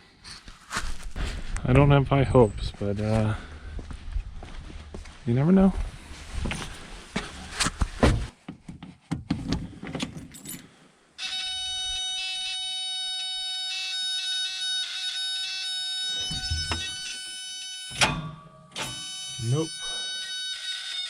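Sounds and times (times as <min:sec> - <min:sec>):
keys jangling: 0:10.2 - 0:10.7
high-pitched warning buzzer: 0:11.2 - 0:21.0.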